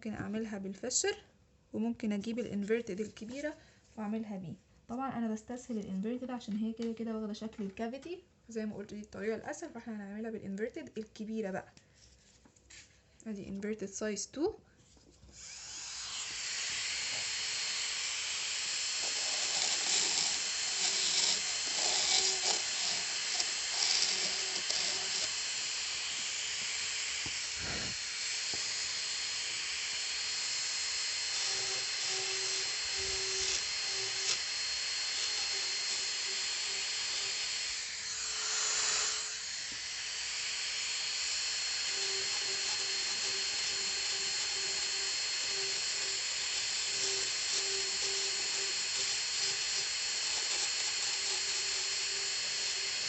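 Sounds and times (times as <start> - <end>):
dental drill whining: 15.3 - 53.0.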